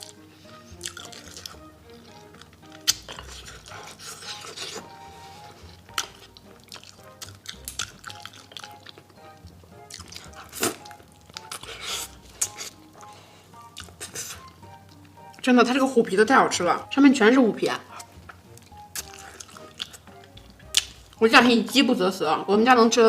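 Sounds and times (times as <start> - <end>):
mouth clicks and smacks: 0.0 - 4.8, 5.9 - 13.1, 13.7 - 15.0, 18.0 - 21.2
wet chewing and sucking: 0.0 - 15.4, 17.8 - 21.2
background music held notes: 0.0 - 23.0.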